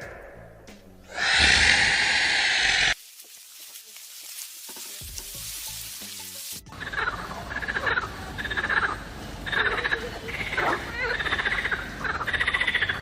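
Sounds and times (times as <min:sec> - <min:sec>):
frogs croaking in chorus: 0:01.1 - 0:03.0, 0:06.7 - 0:13.0.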